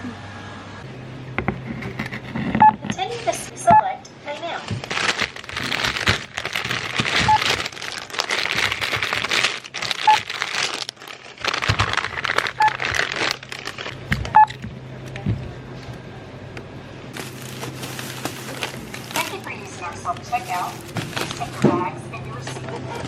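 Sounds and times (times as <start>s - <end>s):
self-checkout machine beeps: 3.6s - 4.0s, 7.2s - 7.5s, 10.0s - 10.3s, 12.6s - 12.8s, 14.3s - 14.6s
plastic bags rustling: 4.6s - 14.3s, 17.1s - 21.9s.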